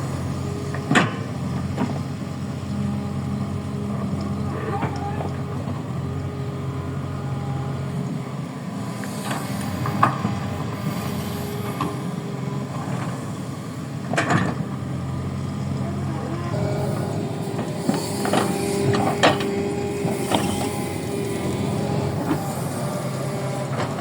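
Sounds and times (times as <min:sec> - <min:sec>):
excavator diesel engine running: 0:00.0 - 0:24.0.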